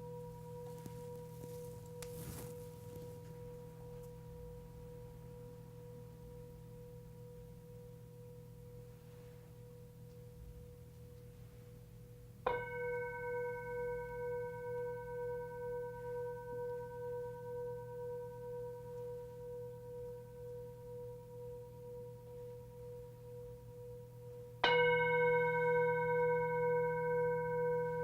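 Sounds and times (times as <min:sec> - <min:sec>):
singing bowl strike: 0:12.5 - 0:15.8
singing bowl ringing: 0:12.5 - 0:28.0.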